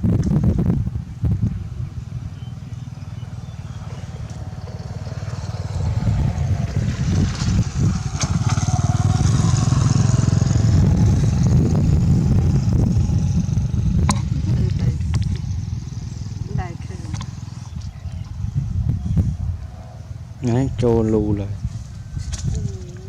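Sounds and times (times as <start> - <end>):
small engine running: 1.9 - 18.4.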